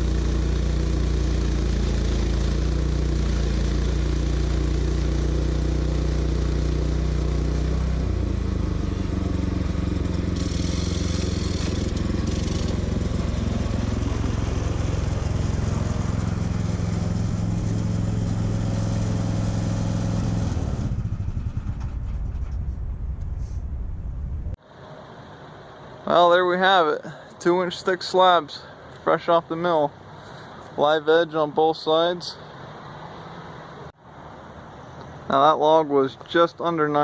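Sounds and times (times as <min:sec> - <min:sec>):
gasoline engine running: 0:00.0 - 0:24.6.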